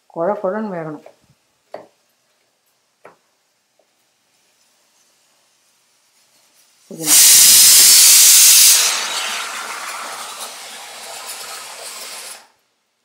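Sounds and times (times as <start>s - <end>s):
pressure cooker steam hiss: 4.0s - 12.7s.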